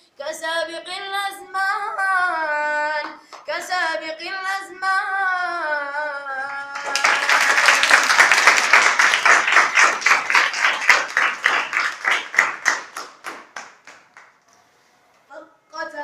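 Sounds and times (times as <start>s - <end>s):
boy singing: 0.2s - 6.9s
children clapping and applauding: 6.7s - 14.4s.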